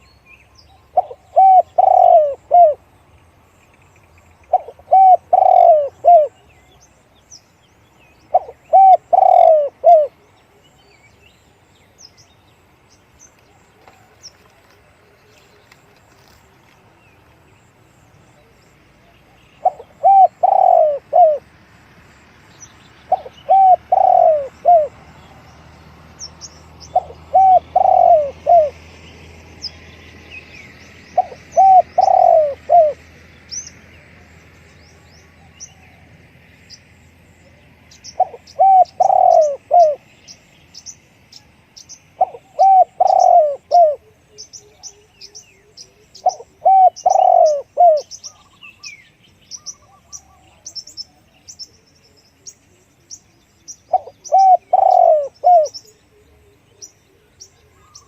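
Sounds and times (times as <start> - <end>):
small birds chirping: 0.0 - 58.0
dove cooing: 0.8 - 2.9, 4.4 - 6.5, 8.2 - 10.8, 19.1 - 21.6, 23.0 - 29.0, 31.1 - 33.3, 37.4 - 40.1, 42.1 - 48.6, 53.8 - 58.0.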